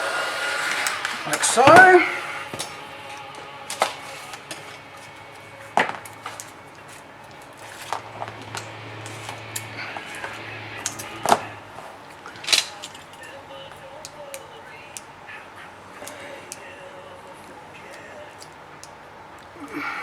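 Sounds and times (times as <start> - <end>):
faint low hum: 0.0 - 20.0
small tools clicking and tapping: 17.8 - 19.8.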